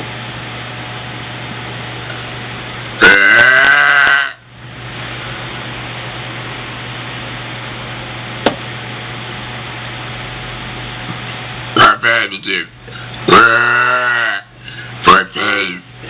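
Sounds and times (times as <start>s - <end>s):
woman burping: 3.0s - 4.4s.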